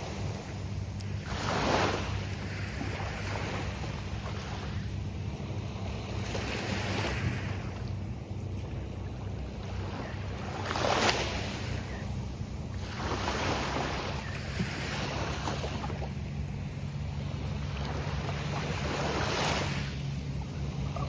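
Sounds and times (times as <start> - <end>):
surf breaking on beach: 0.0 - 4.9.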